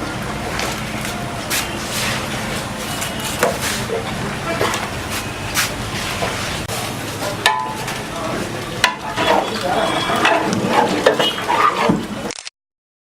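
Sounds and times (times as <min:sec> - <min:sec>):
utensil scraping metal pan: 0:08.8 - 0:12.1.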